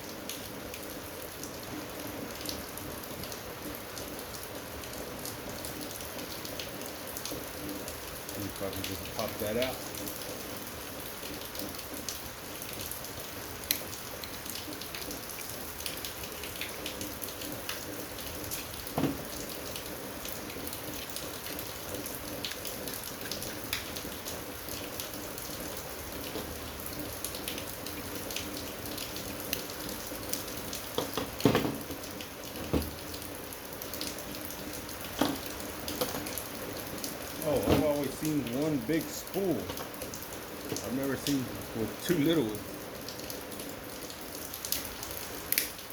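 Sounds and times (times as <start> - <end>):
steady hiss: 35.1 - 42.6.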